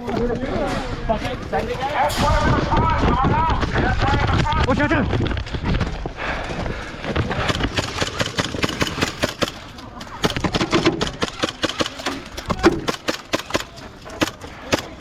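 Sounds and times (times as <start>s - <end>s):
airsoft guns firing: 7.2s - 15.0s.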